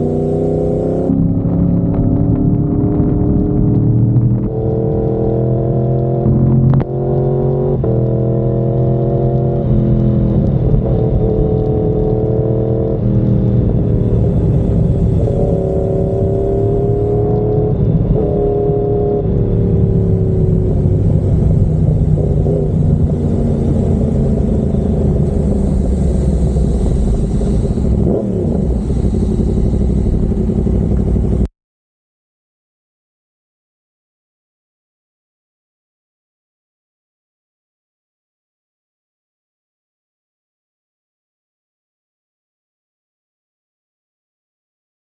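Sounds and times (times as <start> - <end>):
motorcycle engine accelerating: 0.0 - 31.5.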